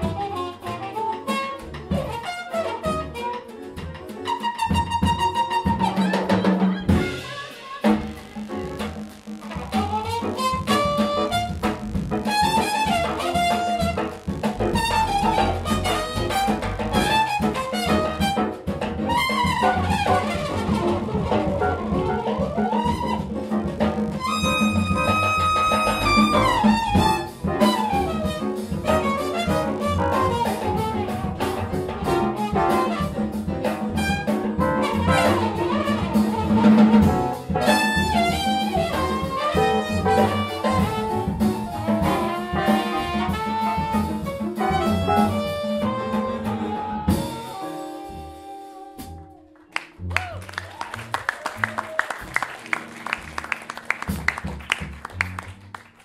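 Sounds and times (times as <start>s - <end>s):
jazz big band playing: 0.0s - 56.0s.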